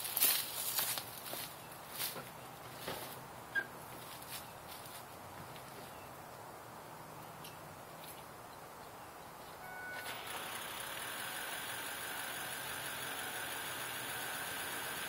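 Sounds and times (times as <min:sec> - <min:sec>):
engine running: 0:09.7 - 0:15.0
engine cranking: 0:09.9 - 0:15.0.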